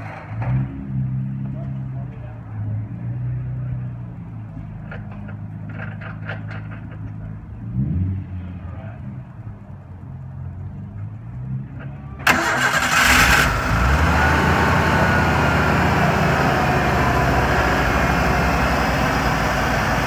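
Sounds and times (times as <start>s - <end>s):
truck engine starting and idling: 12.1s - 20.0s.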